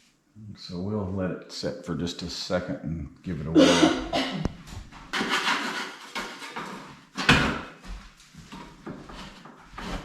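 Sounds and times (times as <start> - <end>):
scraper on wet ceiling texture: 5.1 - 7.0, 8.3 - 10.0.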